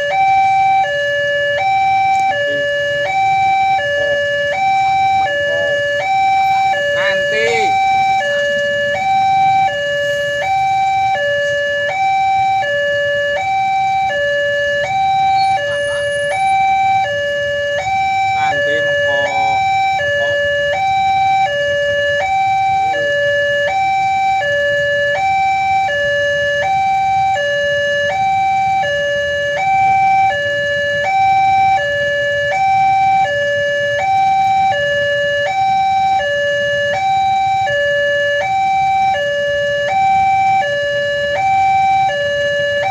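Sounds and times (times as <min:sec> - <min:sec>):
two-tone level crossing alarm: 0:00.0 - 0:42.9.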